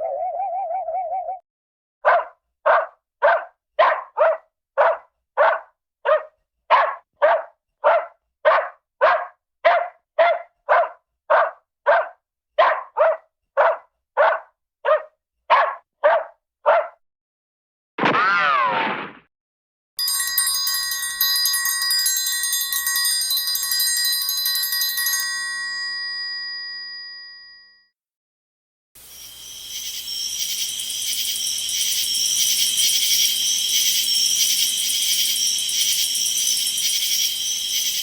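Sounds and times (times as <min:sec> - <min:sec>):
small dog barking excitedly: 0:02.0 - 0:17.0.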